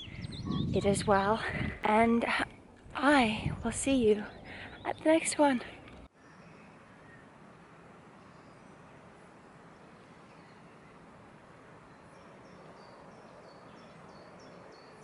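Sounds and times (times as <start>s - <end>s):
bird chirping: 0.0s - 1.4s, 4.0s - 7.3s
low outdoor hiss: 0.8s - 15.0s.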